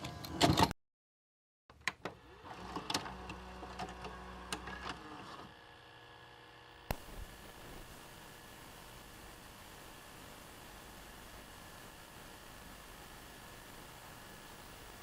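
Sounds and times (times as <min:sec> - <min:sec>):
steady static hiss: 0:06.7 - 0:15.0
faint electronic clicks and crackles: 0:06.9 - 0:15.0.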